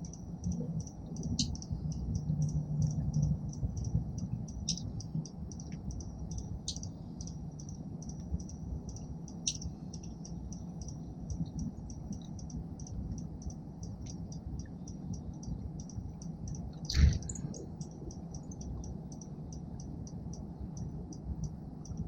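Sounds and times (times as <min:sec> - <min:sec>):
low background rumble: 0:00.0 - 0:22.0
sharp calls or snaps: 0:00.0 - 0:22.0
small bird chipping: 0:09.3 - 0:11.0.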